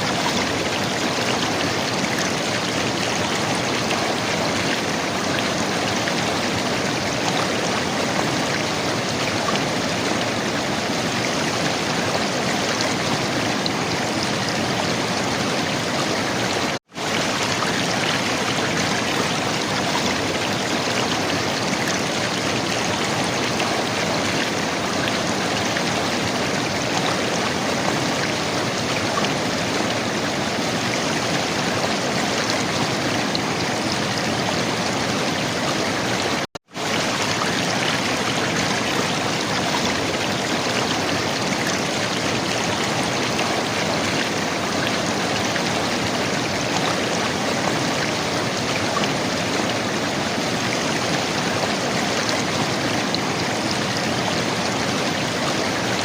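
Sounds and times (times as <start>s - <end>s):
river water flowing and gurgling: 0.0s - 56.0s.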